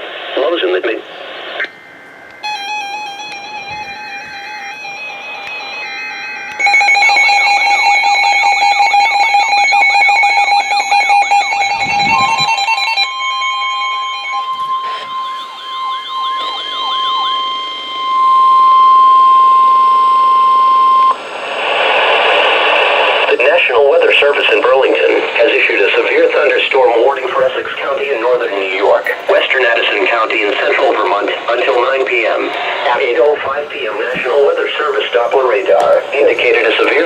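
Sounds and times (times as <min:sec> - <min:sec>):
steady alarm tone: 0:01.0 - 0:37.0
electronic alarm beeps: 0:01.6 - 0:21.2, 0:29.0 - 0:33.0
rising and falling siren warble: 0:01.9 - 0:21.2
announcer speaking: 0:11.8 - 0:17.8, 0:23.3 - 0:37.0.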